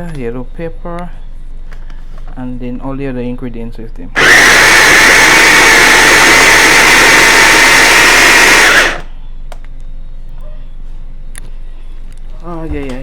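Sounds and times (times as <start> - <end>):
food processor motor whine: 4.2 - 9.1.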